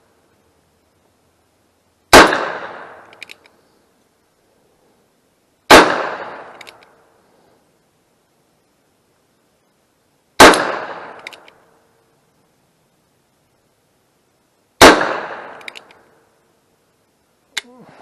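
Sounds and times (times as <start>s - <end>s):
gunshots with echo: 2.1s - 3.0s, 5.7s - 6.5s, 10.4s - 11.2s, 14.8s - 15.6s.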